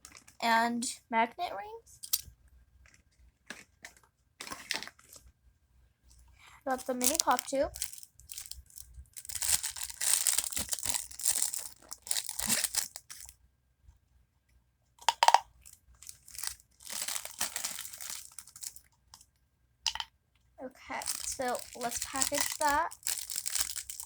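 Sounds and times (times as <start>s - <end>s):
plastic bags crinkling: 0.0s - 0.4s, 2.8s - 5.2s, 6.7s - 13.3s, 15.6s - 18.9s, 20.9s - 24.0s.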